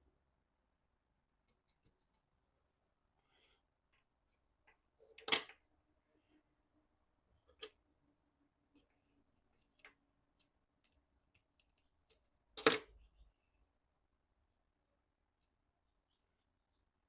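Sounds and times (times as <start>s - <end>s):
small hard objects clicking: 9.6s - 12.4s.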